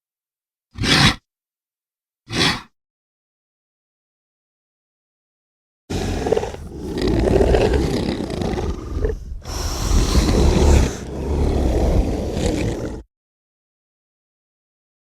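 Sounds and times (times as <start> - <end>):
monster roar: 0.8 - 1.2, 5.9 - 13.1.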